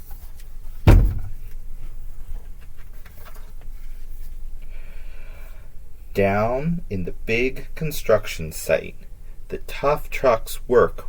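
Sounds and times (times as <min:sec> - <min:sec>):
thump: 0:00.9 - 0:01.5.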